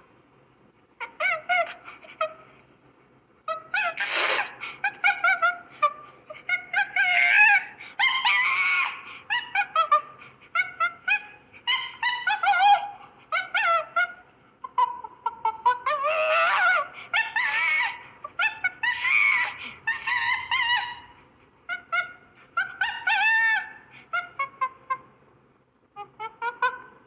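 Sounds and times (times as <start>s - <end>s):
chimpanzee hooting and shrieking: 1.0s - 2.4s, 3.5s - 25.0s
chimpanzee screams: 3.5s - 24.8s.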